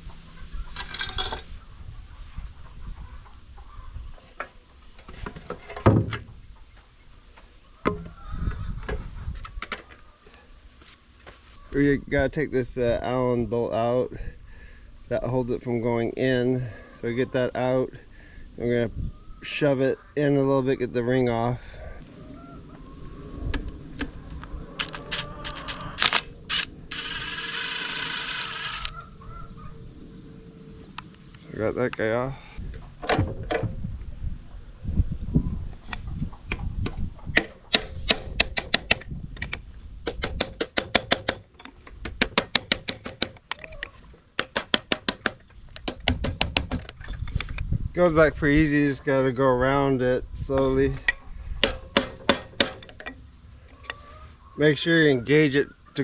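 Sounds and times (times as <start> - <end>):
metal tools clinking on metal: 0.8 - 1.5.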